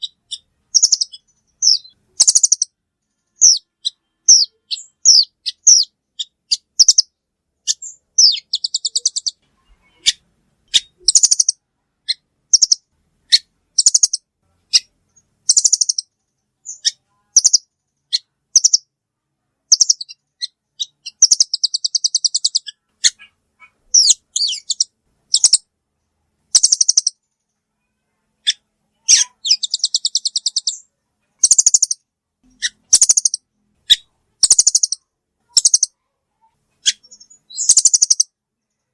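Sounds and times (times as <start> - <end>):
bird chirping high and sharp: 0.0 - 18.9, 19.7 - 25.7, 26.5 - 27.2, 28.4 - 36.0, 36.8 - 38.4.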